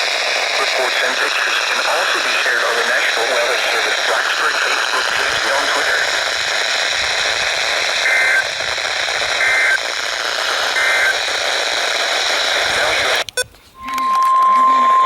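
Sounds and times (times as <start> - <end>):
radio static hiss: 0.0 - 15.0
two-tone digital data bursts: 8.0 - 11.6, 12.3 - 15.0.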